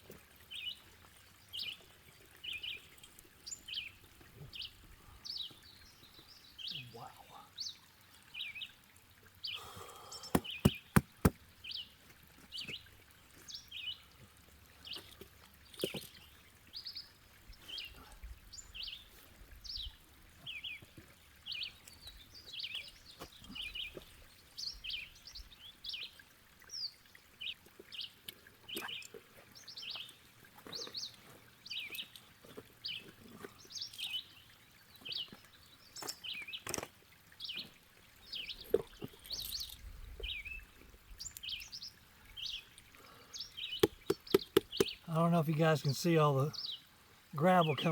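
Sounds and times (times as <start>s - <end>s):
bird chirping: 9.6s - 11.3s, 43.4s - 47.9s
sharp knocks: 10.4s - 11.4s.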